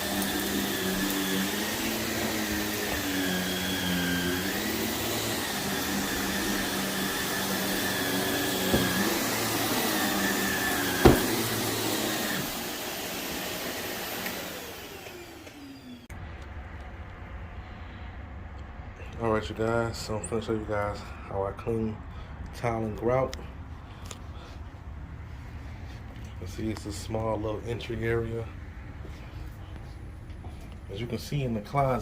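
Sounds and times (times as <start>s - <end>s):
vacuum cleaner running: 0.0s - 16.1s
vacuum motor winding down: 0.0s - 16.1s.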